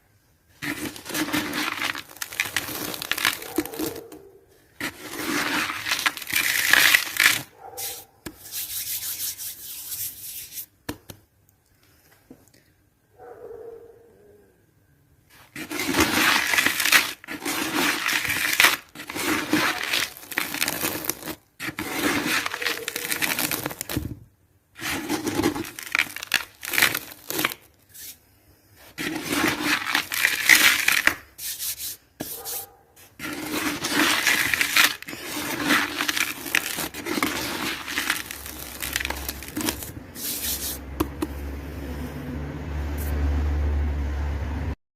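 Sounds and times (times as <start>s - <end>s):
cement crunching and grinding: 0.5s - 8.4s, 15.3s - 24.2s, 24.8s - 28.1s, 28.8s - 41.4s.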